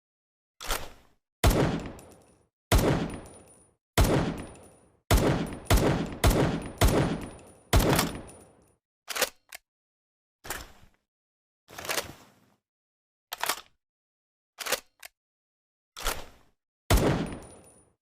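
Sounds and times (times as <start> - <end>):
imitated pistol shots: 1.4 - 2.1, 2.7 - 3.4, 4.0 - 8.4, 16.9 - 17.6.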